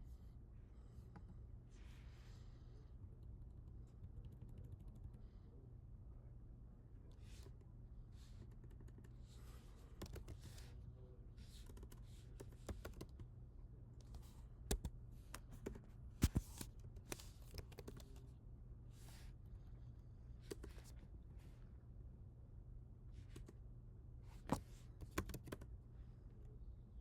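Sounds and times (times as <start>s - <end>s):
computer keyboard typing: 4.0s - 5.1s, 10.0s - 10.5s, 11.6s - 13.2s, 17.4s - 18.2s, 25.0s - 25.7s.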